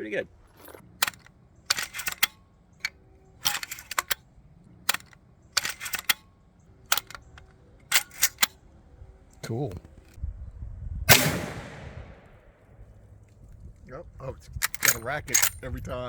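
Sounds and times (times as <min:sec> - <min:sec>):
metallic rifle clicks and clinks: 0:00.6 - 0:08.8, 0:14.5 - 0:15.9.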